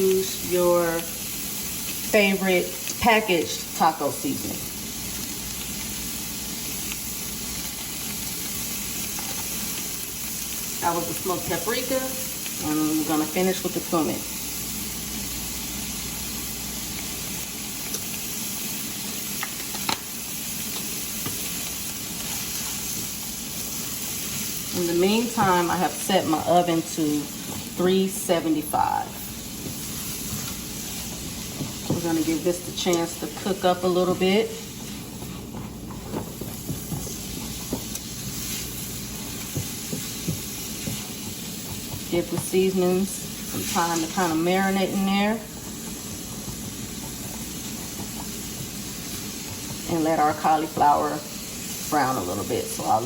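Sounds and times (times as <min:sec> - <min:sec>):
vegetables sizzling in a pan: 0:00.0 - 0:53.0.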